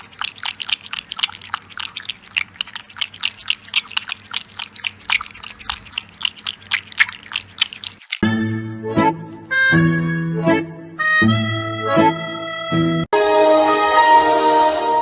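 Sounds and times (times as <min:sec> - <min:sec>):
cat chewing crunchily: 0:00.0 - 0:08.2.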